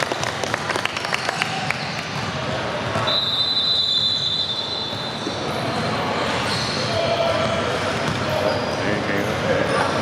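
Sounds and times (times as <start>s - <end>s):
basketball bouncing on court: 0.0s - 3.1s
referee's whistle long blast: 3.1s - 5.0s.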